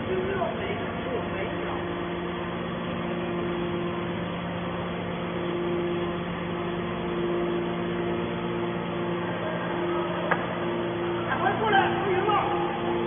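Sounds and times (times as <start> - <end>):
baler motor and pump humming: 0.0 - 13.0
higher humming tone: 0.0 - 13.0.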